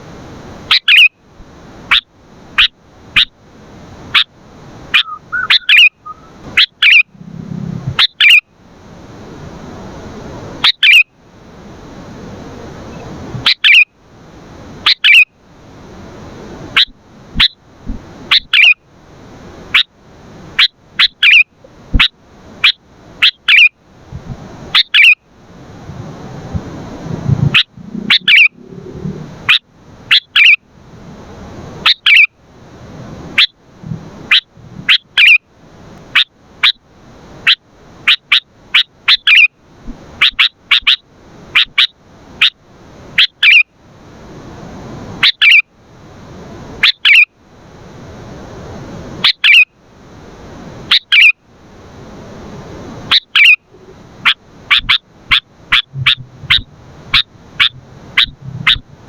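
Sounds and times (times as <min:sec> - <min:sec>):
bulbul calling: 0:00.7 - 0:01.1, 0:04.9 - 0:07.3, 0:07.9 - 0:08.5, 0:10.6 - 0:11.1, 0:12.9 - 0:13.9, 0:14.8 - 0:15.3, 0:16.8 - 0:17.6, 0:18.3 - 0:18.8, 0:20.6 - 0:23.8, 0:24.8 - 0:25.2, 0:27.5 - 0:28.8, 0:29.4 - 0:30.6, 0:31.8 - 0:32.3, 0:34.3 - 0:35.4, 0:37.4 - 0:39.5, 0:40.2 - 0:42.6, 0:43.2 - 0:43.7, 0:45.2 - 0:45.6, 0:46.8 - 0:47.3, 0:49.2 - 0:49.7, 0:50.9 - 0:51.4, 0:53.1 - 0:59.0.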